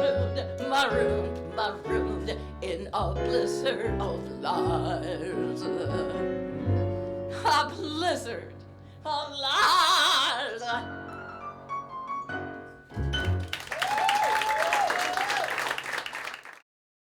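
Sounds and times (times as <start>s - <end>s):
musical accompaniment: 0.0s - 9.0s, 10.6s - 14.8s.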